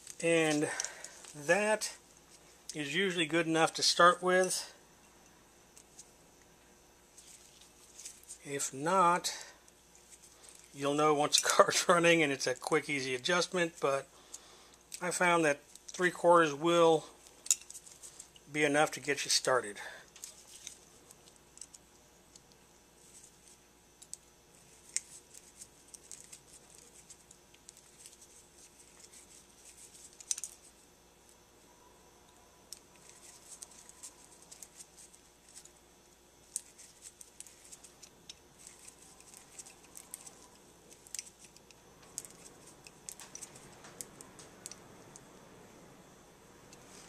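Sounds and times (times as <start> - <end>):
small metal parts being handled: 17.2 - 18.5, 20.1 - 30.8, 32.7 - 35.8, 36.4 - 45.1.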